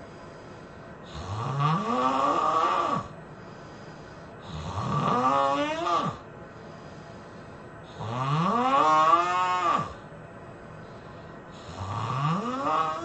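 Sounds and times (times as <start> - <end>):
person snoring: 1.1 - 3.2, 4.4 - 6.2, 7.9 - 10.0, 11.6 - 13.0.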